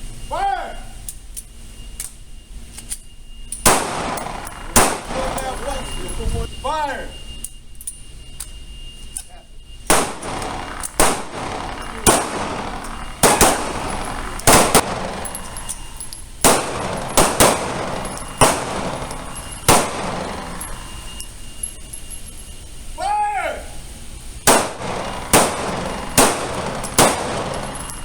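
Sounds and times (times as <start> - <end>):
pistol shots: 3.6 - 6.0, 9.8 - 21.3, 24.4 - 28.0.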